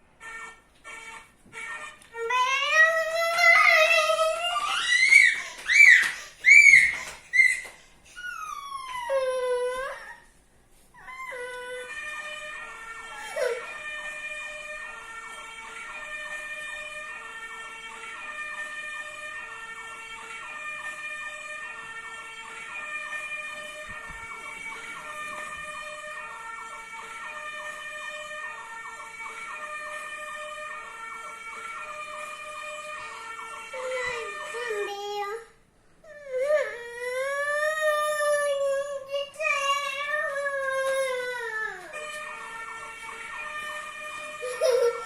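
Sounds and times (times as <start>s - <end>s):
fire truck siren two-tone wail: 0.1s - 10.3s, 11.0s - 35.5s, 36.1s - 45.0s.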